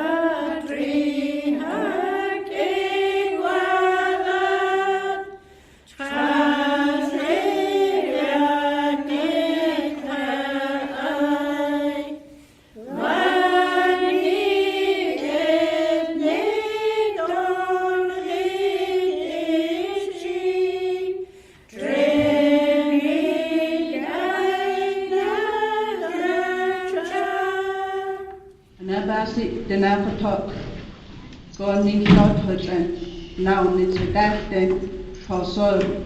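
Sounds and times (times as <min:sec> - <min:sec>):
choir singing unaccompanied: 0:00.0 - 0:28.6.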